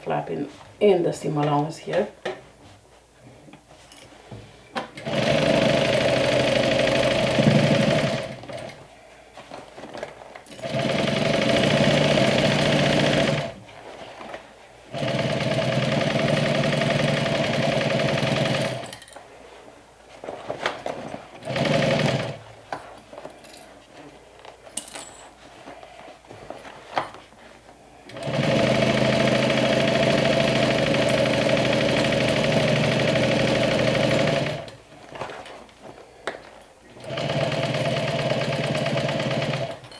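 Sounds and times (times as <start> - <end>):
sewing machine stitching: 5.0 - 8.8, 10.5 - 13.6, 14.9 - 19.0, 21.4 - 22.4, 28.1 - 34.8, 37.0 - 39.9.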